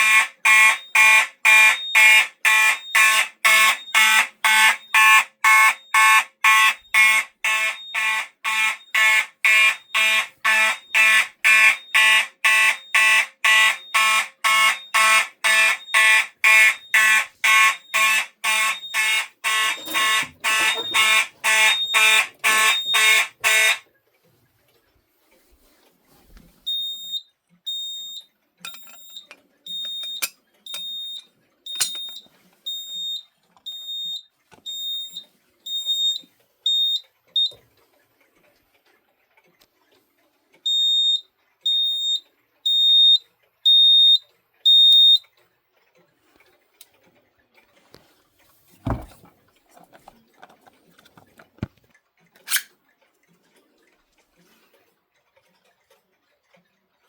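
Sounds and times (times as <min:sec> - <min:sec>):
fire alarm beeping: 0:00.0 - 0:23.8, 0:26.7 - 0:37.6, 0:40.7 - 0:45.3
thump: 0:48.8 - 0:49.2.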